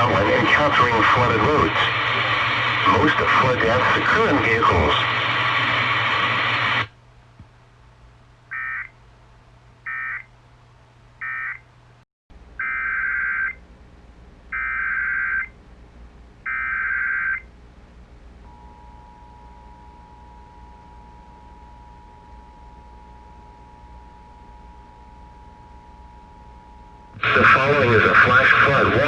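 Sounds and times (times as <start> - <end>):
low hum: 0.0 - 29.0
synthesized voice: 27.2 - 29.0.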